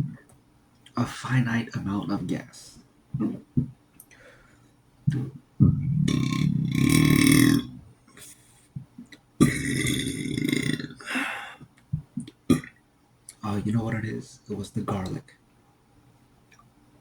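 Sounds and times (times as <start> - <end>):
man burping: 5.6 - 7.9, 9.4 - 11.6, 12.5 - 12.8.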